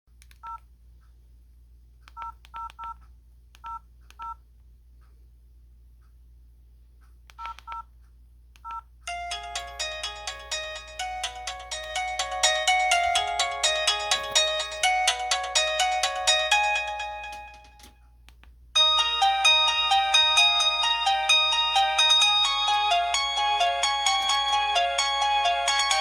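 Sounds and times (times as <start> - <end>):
polyphonic ringtone melody: 9.1 - 17.9, 18.8 - 26.0.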